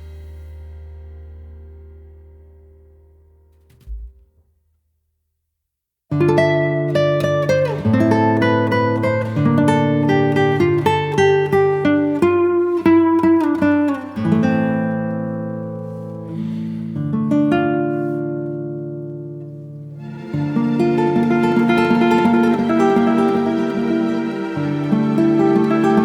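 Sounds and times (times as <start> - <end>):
plucked acoustic guitar: 6.1 - 26.0
strummed guitar chord ringing: 20.0 - 26.0.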